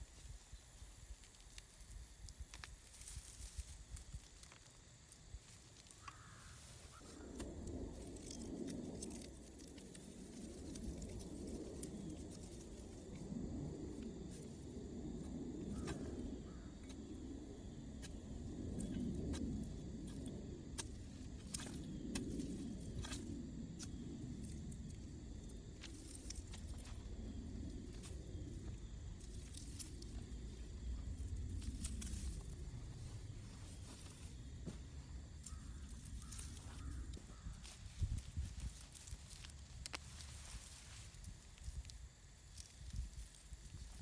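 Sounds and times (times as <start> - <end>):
rustling plants: 27.7 - 44.0.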